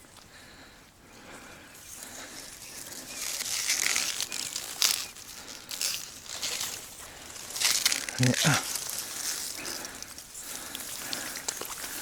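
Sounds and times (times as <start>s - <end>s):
reeds rustling and crunching: 1.8s - 12.0s.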